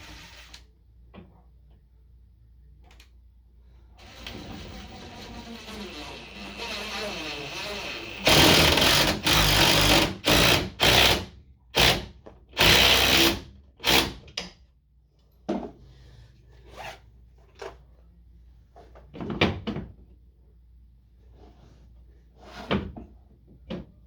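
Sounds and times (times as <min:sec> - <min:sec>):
power tool driving into wall: 0:04.0 - 0:14.2.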